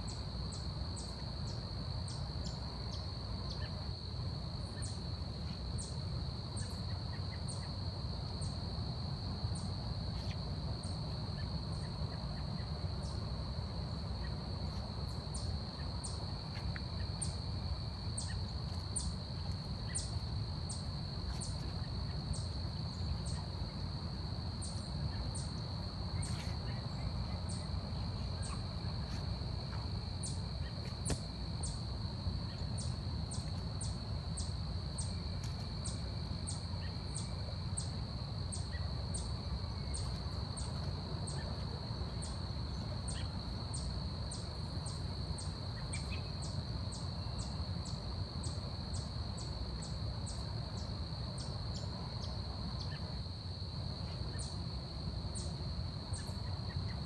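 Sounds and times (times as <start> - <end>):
high-pitched insect trill: 0.0 - 57.0.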